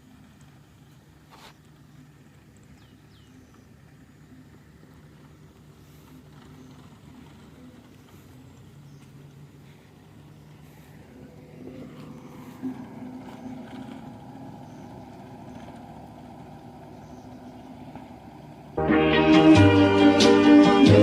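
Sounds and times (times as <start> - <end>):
construction machinery engine: 0.0 - 21.0.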